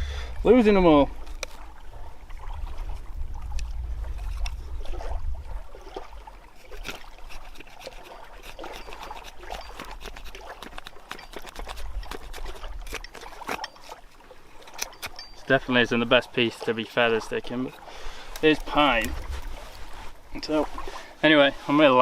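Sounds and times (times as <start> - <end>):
knife scraping wood: 6.5 - 14.0, 14.6 - 15.5.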